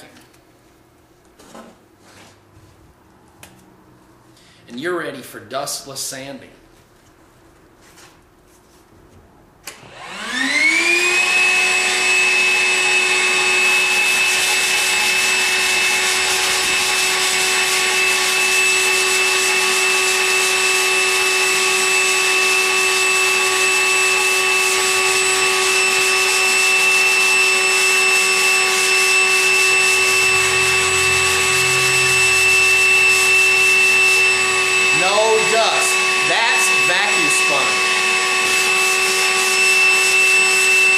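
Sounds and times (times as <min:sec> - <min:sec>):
vacuum cleaner running: 0:09.7 - 0:40.9.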